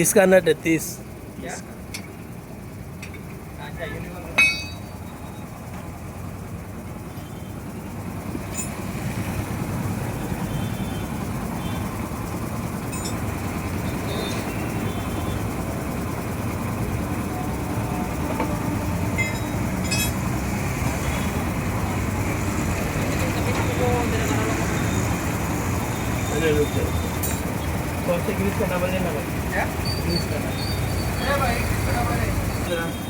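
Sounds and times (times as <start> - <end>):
vehicle engine rumbling: 0.0 - 33.0
faint metallic clinks: 4.4 - 5.0, 12.9 - 13.4, 19.2 - 20.3, 27.1 - 27.6.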